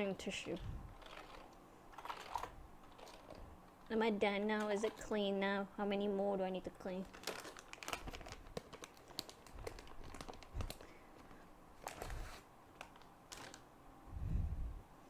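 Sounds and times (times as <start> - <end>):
small crackly clicks: 7.0 - 13.7.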